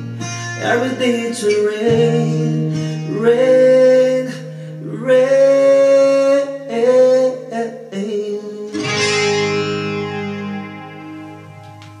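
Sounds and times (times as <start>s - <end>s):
strummed guitar chord ringing: 0.0s - 4.0s, 8.7s - 12.0s
acoustic guitar note: 8.7s - 12.0s.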